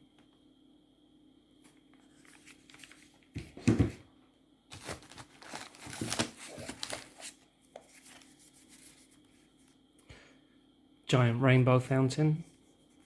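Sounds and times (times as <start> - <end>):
packaging crinkling and rustling: 2.1 - 3.3, 4.7 - 8.5.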